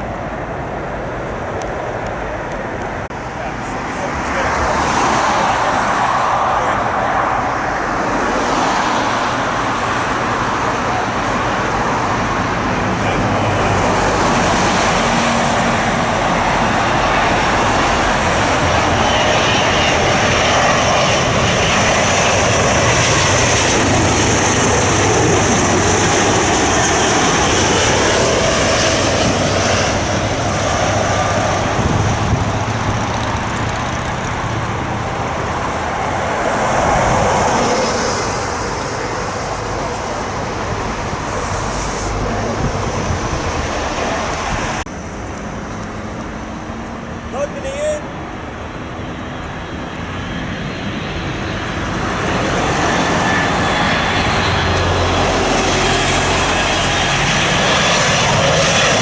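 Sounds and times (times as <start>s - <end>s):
jet engines roaring: 0.0s - 59.0s.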